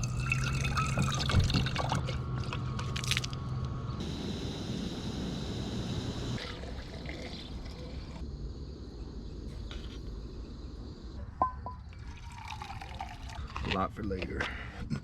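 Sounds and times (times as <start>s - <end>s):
water pouring and trickling: 0.0s - 3.3s, 6.4s - 8.2s, 11.9s - 13.8s
steady hum: 0.0s - 12.8s.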